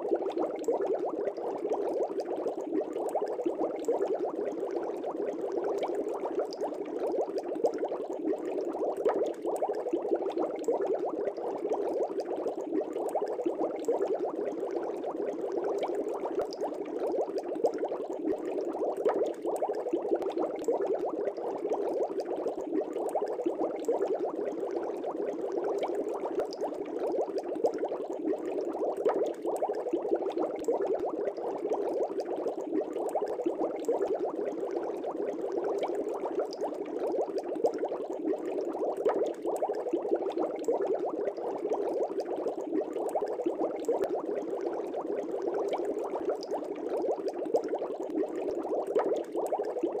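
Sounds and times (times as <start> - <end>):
aquarium air bubbles bubbling: 0.0 - 50.0.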